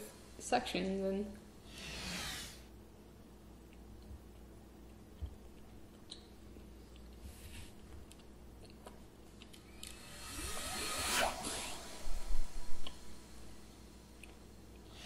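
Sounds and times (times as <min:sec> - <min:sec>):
faint chewing: 0:03.6 - 0:09.7
soft hiss: 0:06.0 - 0:15.0.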